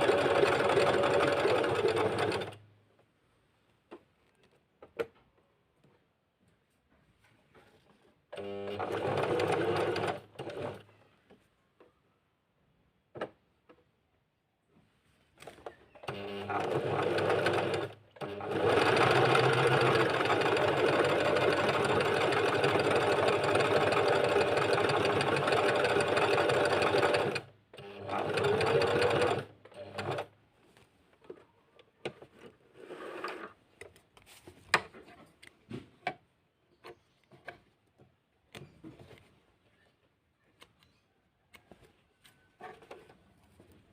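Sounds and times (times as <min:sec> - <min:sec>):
sewing machine stitching: 0:00.0 - 0:02.6, 0:08.3 - 0:10.9, 0:16.0 - 0:30.3.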